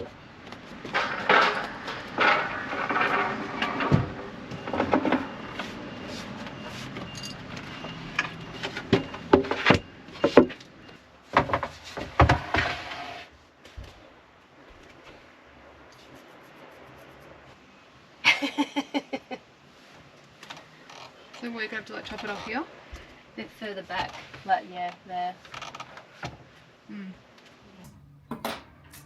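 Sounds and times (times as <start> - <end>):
wooden boards knocking and clattering: 0.5 - 5.4, 28.3 - 28.8.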